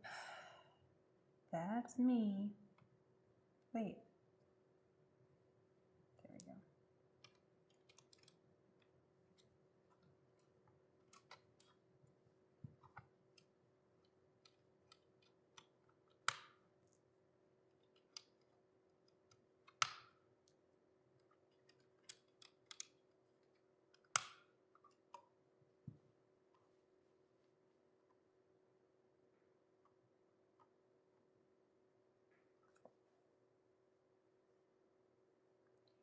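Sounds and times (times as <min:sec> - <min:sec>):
faint steady hum: 0:00.0 - 0:36.0
plastic parts clicking: 0:07.2 - 0:11.8, 0:21.2 - 0:25.2.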